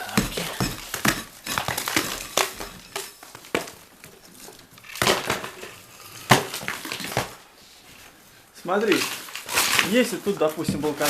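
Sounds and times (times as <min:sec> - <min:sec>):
brick and plaster crunching: 0:00.0 - 0:07.5, 0:08.6 - 0:11.0.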